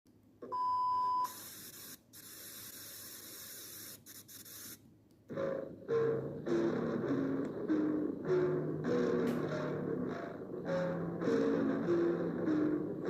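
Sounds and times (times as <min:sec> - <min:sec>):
static hiss: 0:01.2 - 0:04.9.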